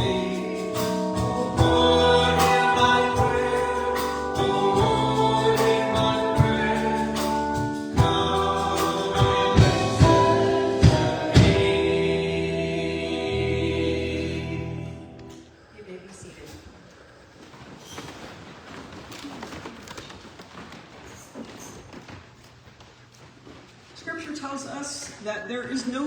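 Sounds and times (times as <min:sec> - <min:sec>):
instrumental accompaniment: 0:00.0 - 0:15.3
group singing a hymn: 0:00.0 - 0:15.4.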